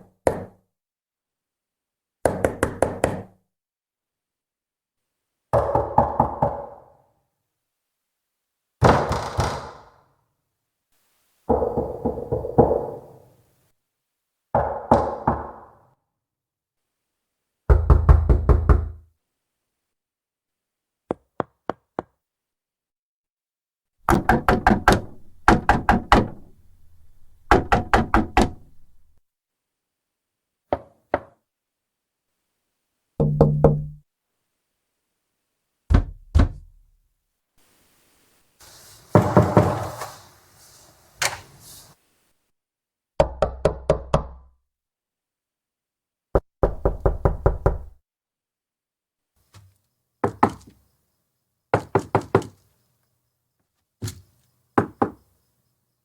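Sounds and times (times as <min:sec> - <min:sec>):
fist knocking on wooden door: 0:17.7 - 0:19.0, 0:24.1 - 0:26.6, 0:27.2 - 0:29.0, 0:33.2 - 0:34.0, 0:35.9 - 0:36.7, 0:46.4 - 0:48.0.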